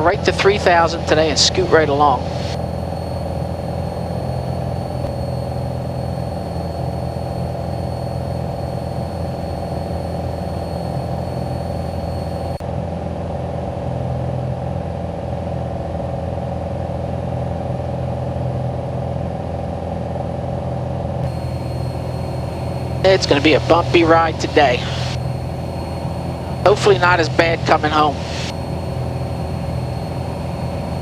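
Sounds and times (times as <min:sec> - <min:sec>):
faint high whine: 0:00.0 - 0:12.6, 0:21.2 - 0:31.0
plane engine and propeller droning: 0:00.0 - 0:13.4, 0:21.2 - 0:31.0.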